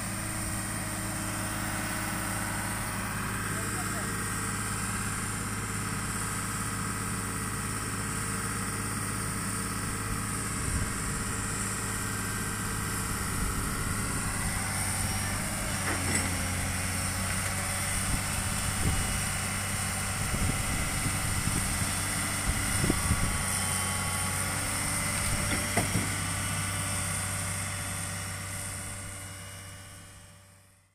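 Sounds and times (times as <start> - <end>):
diesel engine idling: 0.0 - 30.6
knocks and clanks: 15.8 - 16.5, 25.4 - 26.2.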